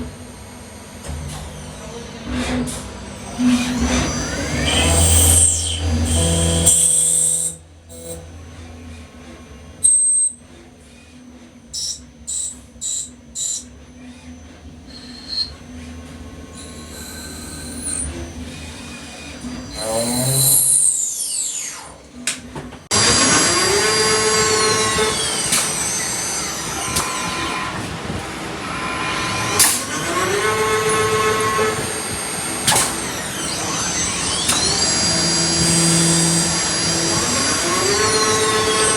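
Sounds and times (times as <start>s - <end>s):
machine low hum: 0.0s - 20.8s
machine high-pitched whine: 0.0s - 38.9s.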